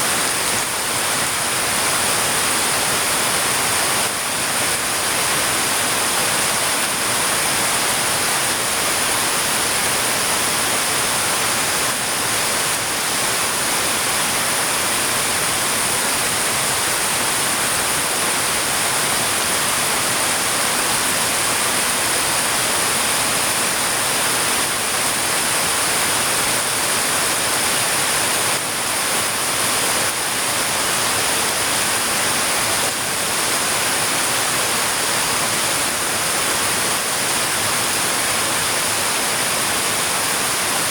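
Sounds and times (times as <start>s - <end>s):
heavy rain: 0.0s - 40.9s.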